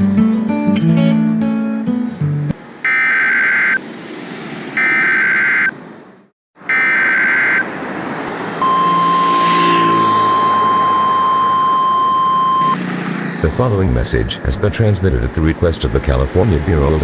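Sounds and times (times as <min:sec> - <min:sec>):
digital data tones: 0:02.9 - 0:03.8, 0:04.8 - 0:05.7, 0:06.7 - 0:07.6, 0:08.6 - 0:12.8
steady alert tone: 0:02.9 - 0:03.8, 0:04.8 - 0:05.7, 0:06.7 - 0:07.6, 0:08.6 - 0:12.8.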